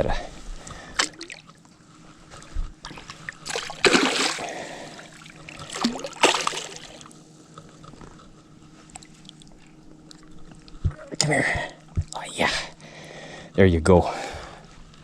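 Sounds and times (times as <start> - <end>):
fish thrashing water splashing: 2.8 - 7.2.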